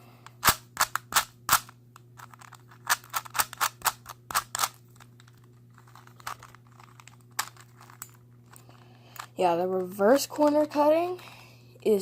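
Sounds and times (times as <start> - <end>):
puzzle cube plastic clacks: 0.4 - 10.7.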